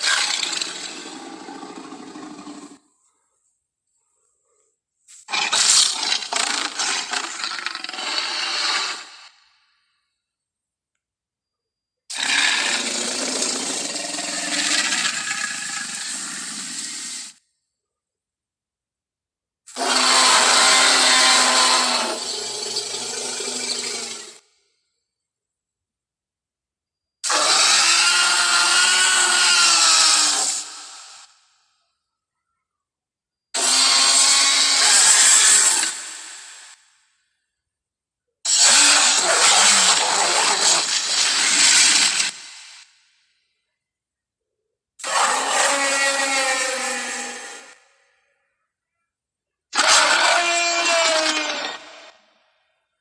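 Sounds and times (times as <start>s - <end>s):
long rasping dinosaur roar: 0.0s - 2.8s, 12.1s - 17.1s, 19.7s - 24.4s, 38.5s - 42.3s, 45.0s - 47.8s.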